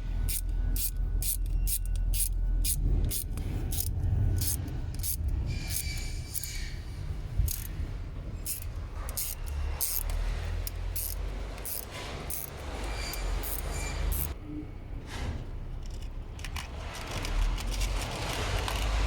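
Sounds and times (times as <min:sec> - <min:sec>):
steady low rumble: 0:00.0 - 0:13.0
hand tools clicking and scraping: 0:00.0 - 0:14.4, 0:15.8 - 0:19.0.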